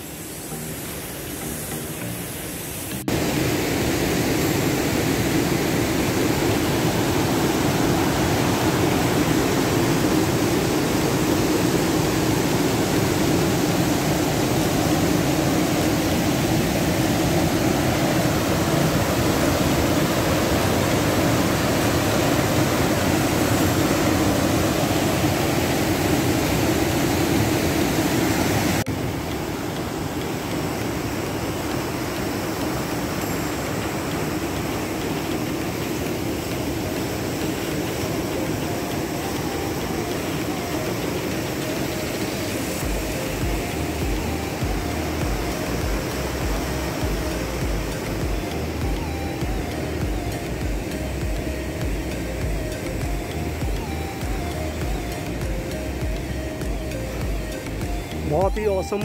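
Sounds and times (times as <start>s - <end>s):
loud steady rushing noise: 0.0s - 59.0s.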